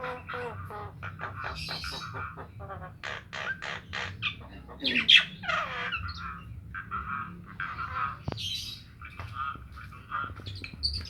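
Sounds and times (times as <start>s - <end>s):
myna harsh chattering calls: 0.0s - 6.4s.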